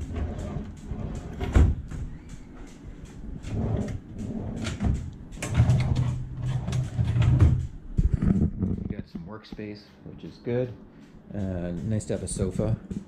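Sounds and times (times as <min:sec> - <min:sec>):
drawers sliding and knocking shut: 0:00.0 - 0:02.1, 0:03.4 - 0:07.7
steady low hum: 0:00.0 - 0:13.0.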